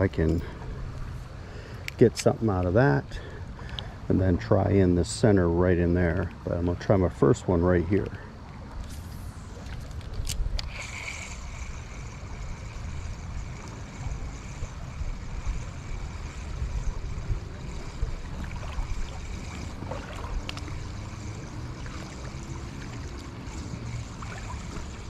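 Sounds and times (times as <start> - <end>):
creek water running over rocks: 10.7 - 25.0.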